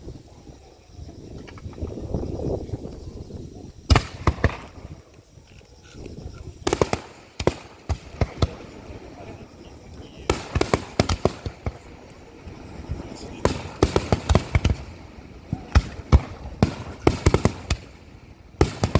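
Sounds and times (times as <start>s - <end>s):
firework bangs: 3.8s - 5.3s, 6.5s - 18.9s.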